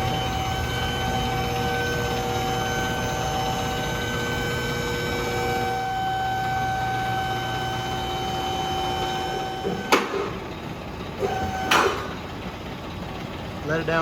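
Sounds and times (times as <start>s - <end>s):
electric pump motor whining: 0.0s - 13.6s
lift clunk: 9.2s - 12.6s.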